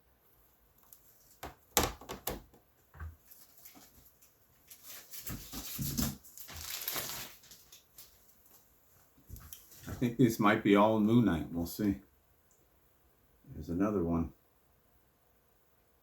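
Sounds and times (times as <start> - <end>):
packing material rustling: 3.2 - 8.7.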